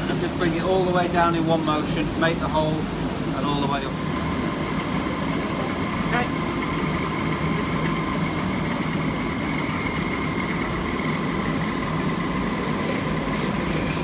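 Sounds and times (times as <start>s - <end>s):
drill motor humming: 4.0s - 14.0s.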